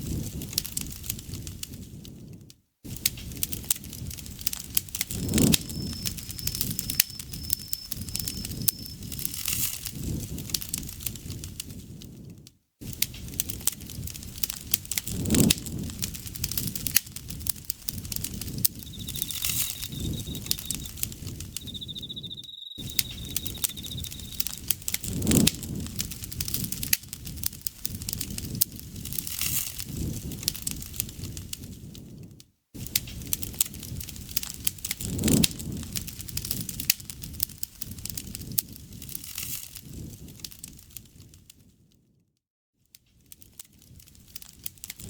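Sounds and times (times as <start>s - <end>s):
campfire crackling and popping: 3.0s - 31.8s, 32.8s - 41.4s, 43.3s - 45.0s
low rush of burning: 4.1s - 9.6s, 14.0s - 21.8s
insect trilling: 5.1s - 9.5s, 18.2s - 24.7s.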